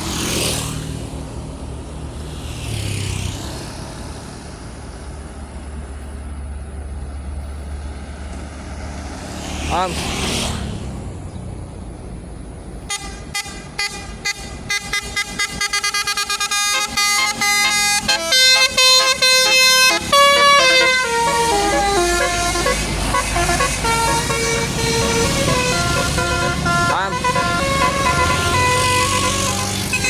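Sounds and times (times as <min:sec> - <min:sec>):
bus engine rumbling: 0:00.0 - 0:30.0
musical air horn tooting: 0:12.9 - 0:30.0.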